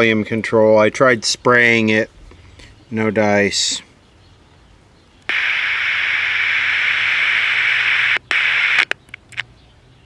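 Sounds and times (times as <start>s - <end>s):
radio static hiss: 5.3s - 9.0s.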